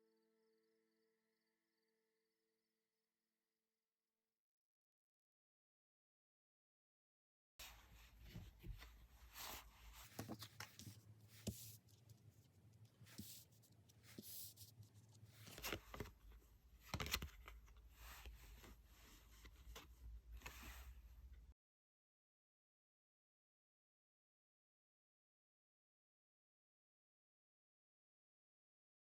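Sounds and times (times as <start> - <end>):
soft taps and scrapes: 7.6 - 21.4
cards rustling and sliding: 9.2 - 12.2, 13.0 - 21.0.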